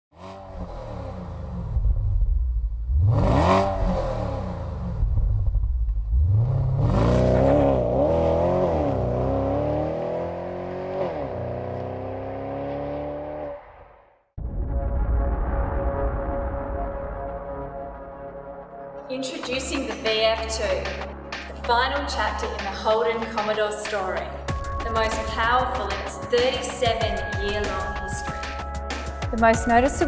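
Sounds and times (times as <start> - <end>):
car engine revving: 0.2 - 14.0.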